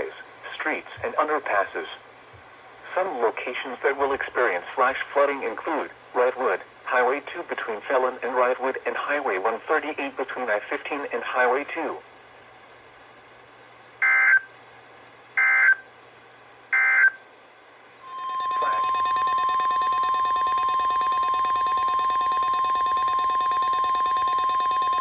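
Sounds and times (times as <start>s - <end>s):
steady single-pitch alert tone: 18.0s - 25.0s
warbling data bursts: 18.0s - 25.0s.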